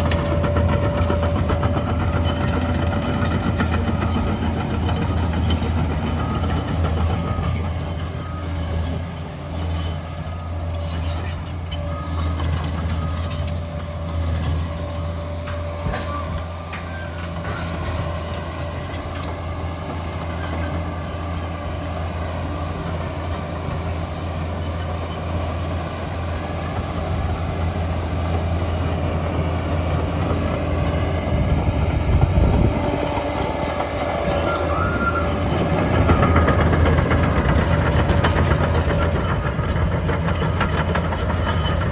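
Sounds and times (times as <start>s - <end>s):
dozer diesel engine running: 0.0s - 41.9s.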